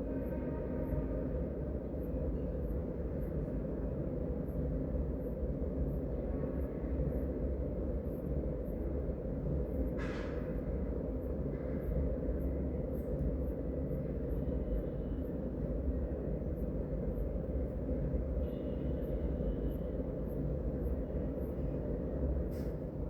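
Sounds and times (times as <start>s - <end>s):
street traffic rumble: 7.3s - 23.0s.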